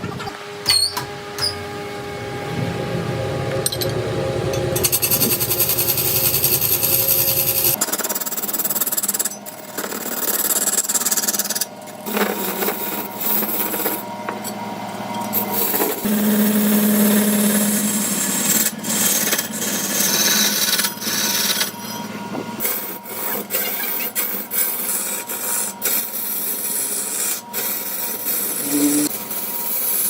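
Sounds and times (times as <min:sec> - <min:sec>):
power tools cutting wood: 0:15.5 - 0:21.8, 0:22.6 - 0:30.0.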